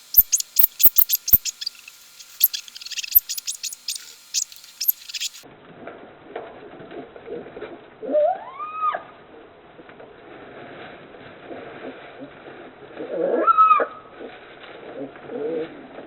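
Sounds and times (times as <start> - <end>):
bear cub clicks and squeaks: 0.0 - 5.4
bear cub squealing: 0.0 - 5.4.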